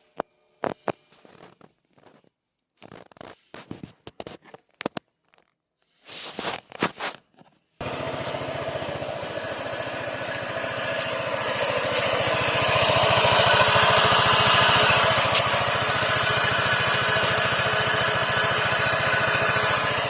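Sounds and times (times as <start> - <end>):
scooter engine running: 7.8 - 20.0.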